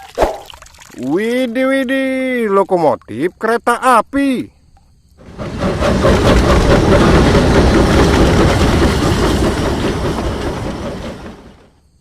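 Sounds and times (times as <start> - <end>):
train rumbling on track: 5.2 - 12.0.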